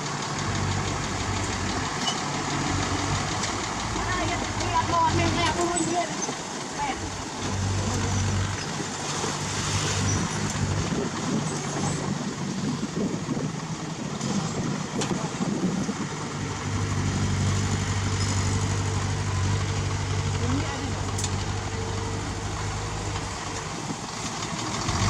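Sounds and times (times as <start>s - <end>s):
diesel engine humming: 0.0s - 25.0s.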